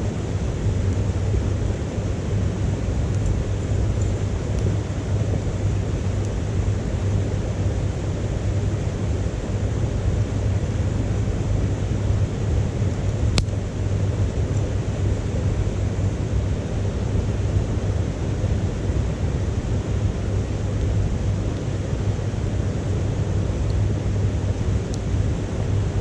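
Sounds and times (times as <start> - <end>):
burning wood crackle: 13.4 - 13.8.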